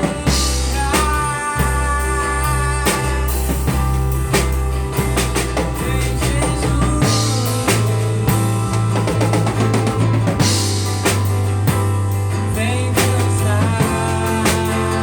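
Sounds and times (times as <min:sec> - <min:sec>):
drum kit steady beat: 0:00.0 - 0:15.0
held bass line: 0:00.0 - 0:15.0.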